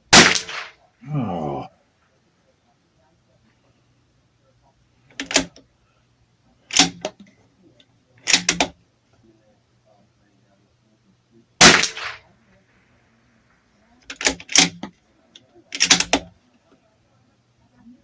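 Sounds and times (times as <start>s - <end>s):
rifle shots: 0.1s - 0.8s, 11.6s - 12.3s
rifle bolt clicks: 5.1s - 5.6s, 6.7s - 7.2s, 8.3s - 8.8s, 14.1s - 14.9s, 15.7s - 16.3s.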